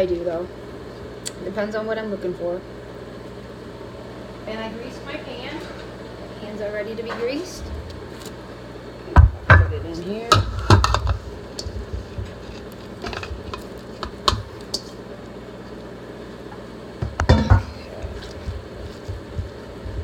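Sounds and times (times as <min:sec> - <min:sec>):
low hum: 0:07.5 - 0:20.0.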